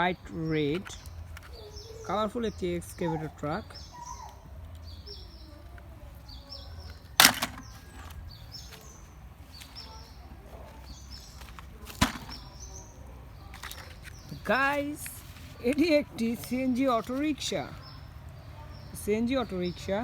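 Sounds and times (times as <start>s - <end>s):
small bird chirping: 0.0s - 16.0s
hard objects knocking: 7.1s - 8.2s, 11.9s - 12.6s.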